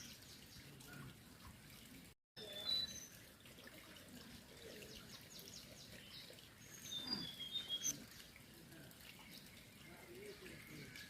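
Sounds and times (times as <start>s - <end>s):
small bird chirping: 5.1s - 8.1s.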